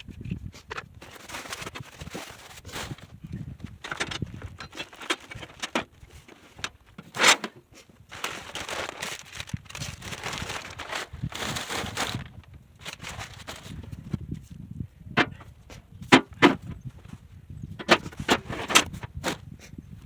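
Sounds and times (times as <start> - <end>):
cardboard and packing rustling: 0.7 - 14.2, 17.8 - 19.6.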